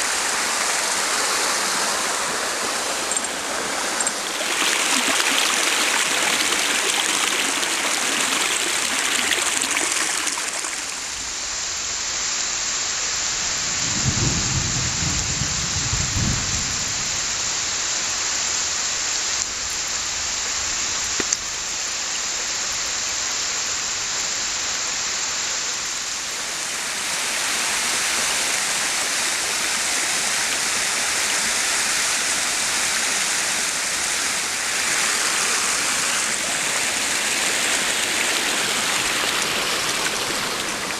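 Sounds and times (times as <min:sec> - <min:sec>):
heavy rain pouring: 0:00.0 - 0:40.9
thunder rumble: 0:13.2 - 0:18.4.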